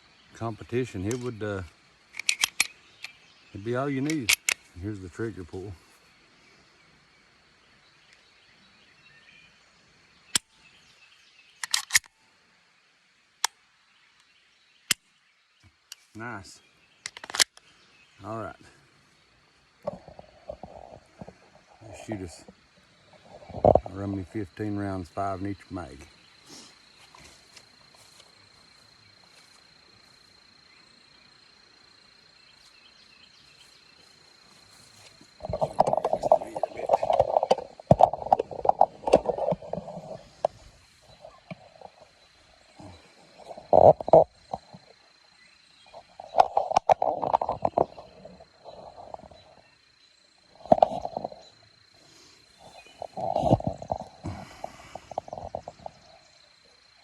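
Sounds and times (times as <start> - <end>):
cricket trill: 0.0 - 57.0
pistol slide clicks: 2.2 - 3.2, 11.6 - 12.1.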